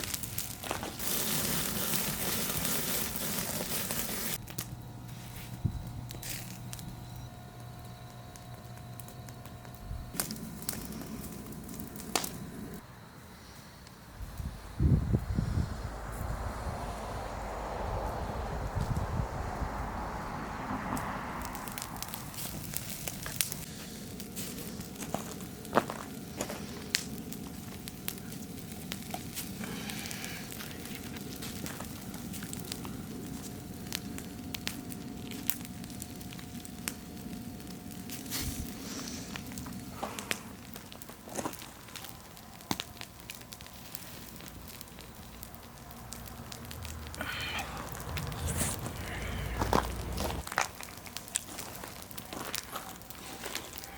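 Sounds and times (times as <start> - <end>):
wood fire crackling: 0.0 - 53.9
short rustling scrape: 0.8 - 4.4, 48.2 - 50.4.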